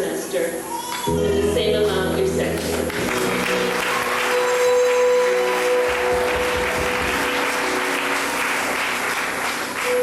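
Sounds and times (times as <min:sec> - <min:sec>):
background music: 0:01.1 - 0:10.0
audience applauding: 0:02.6 - 0:10.0.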